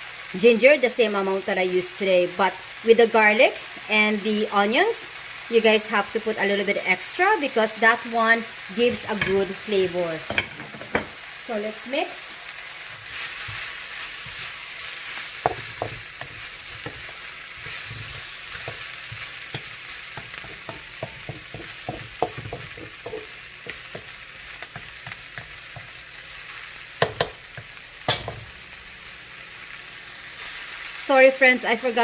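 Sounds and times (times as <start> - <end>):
meat sizzling in a pan: 0.0 - 32.0
utensil scraping a pan: 13.0 - 25.5.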